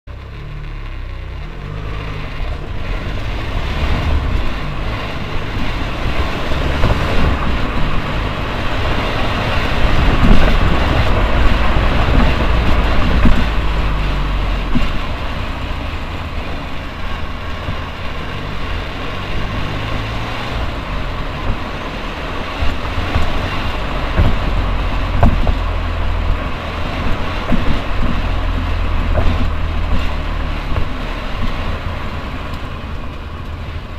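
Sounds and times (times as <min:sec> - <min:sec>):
car engine low rumble: 0:00.0 - 0:33.9
rear brakes noise: 0:00.1 - 0:33.7
sharp knocks: 0:24.1 - 0:25.6.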